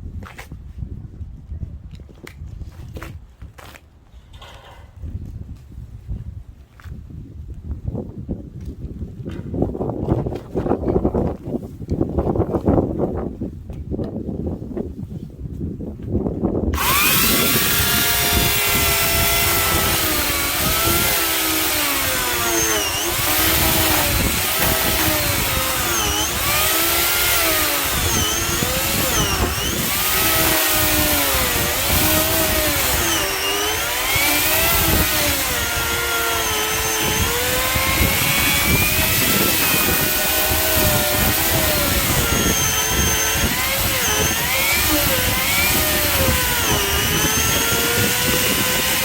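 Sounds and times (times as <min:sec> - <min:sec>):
electric saw cutting log: 0:16.8 - 0:49.0.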